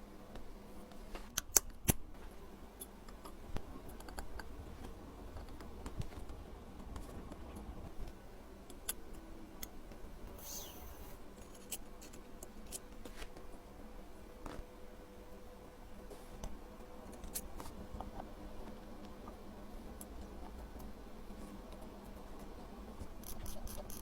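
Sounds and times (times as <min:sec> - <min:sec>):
brief hiss: 0:10.4 - 0:11.2.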